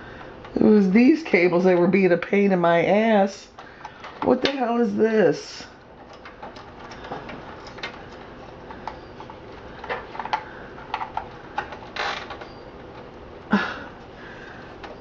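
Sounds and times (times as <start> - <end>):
cables and connectors clicking: 5.8 - 13.3.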